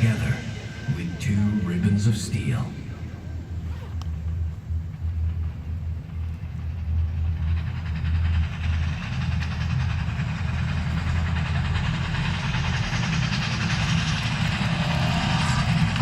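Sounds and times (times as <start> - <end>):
train running on rails: 0.0 - 16.0.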